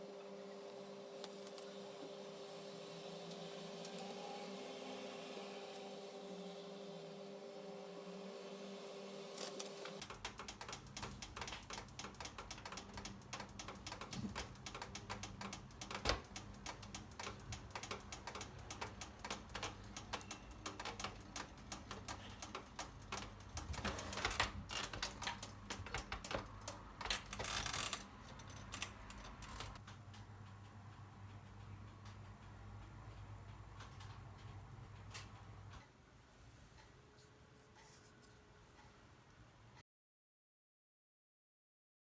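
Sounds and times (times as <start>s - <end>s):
typing on computer keyboard: 10.0s - 30.3s.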